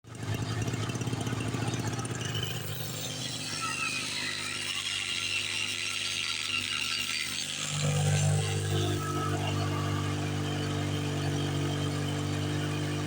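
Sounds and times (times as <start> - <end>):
generator engine running: 0.1 - 5.8, 7.2 - 13.0
faint wavering high whine: 7.6 - 13.0.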